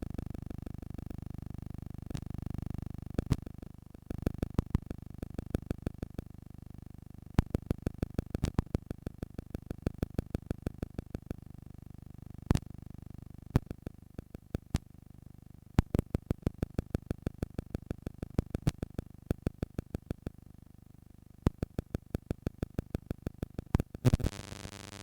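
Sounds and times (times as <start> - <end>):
cassette tape hiss: 0.0 - 25.0.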